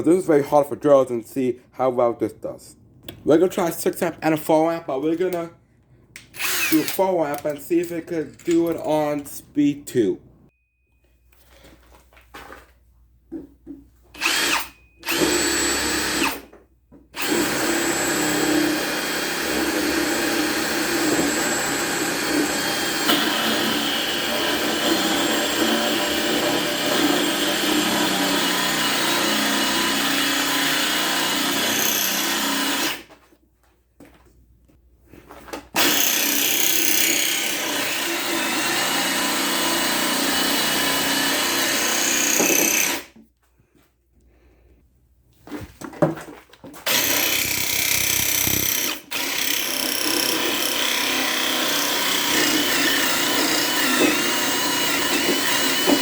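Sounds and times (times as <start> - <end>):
hammer drill boring under load: 6.4 - 7.4, 14.2 - 16.4, 17.2 - 33.0, 35.8 - 43.1, 46.9 - 56.0.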